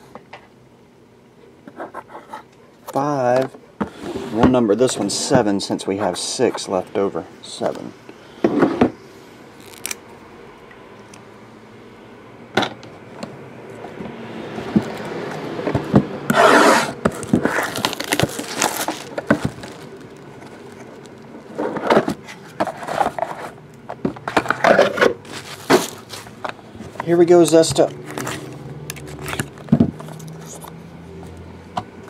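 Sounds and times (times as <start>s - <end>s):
wrapper and cardboard rustling: 16.4s - 23.6s, 24.2s - 30.7s.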